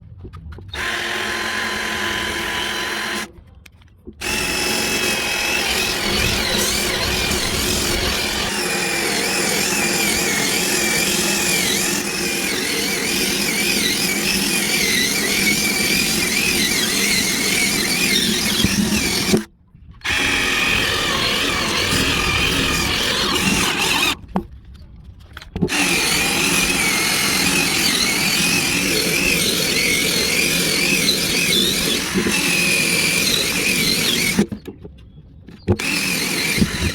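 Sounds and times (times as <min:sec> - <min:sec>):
power drill whining under load: 0:00.8 - 0:03.3, 0:04.2 - 0:24.2, 0:25.7 - 0:34.5, 0:35.8 - 0:36.9.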